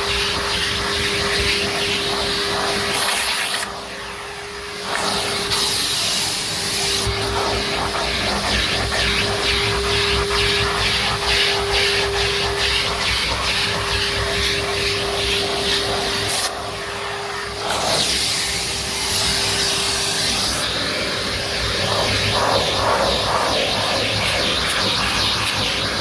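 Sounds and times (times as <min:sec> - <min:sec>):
vacuum cleaner motor whine: 0:00.0 - 0:26.0
suction hiss: 0:00.2 - 0:26.0.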